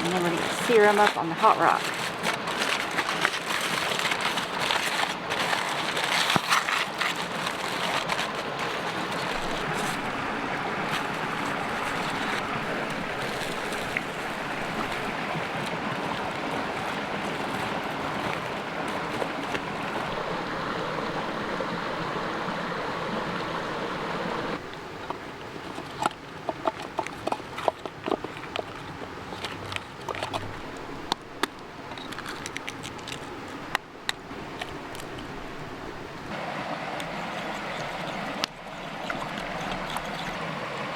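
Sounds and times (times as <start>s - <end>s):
sharp clicks and crackles: 0.0s - 10.1s, 31.1s - 34.2s
creek rushing: 0.0s - 40.9s.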